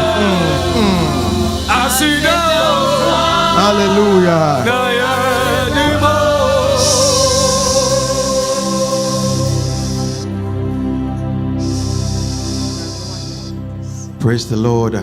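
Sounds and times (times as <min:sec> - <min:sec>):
high hiss: 0:00.0 - 0:02.3, 0:06.8 - 0:10.4, 0:11.6 - 0:14.0
man singing: 0:00.0 - 0:09.3
gospel music: 0:00.0 - 0:14.3.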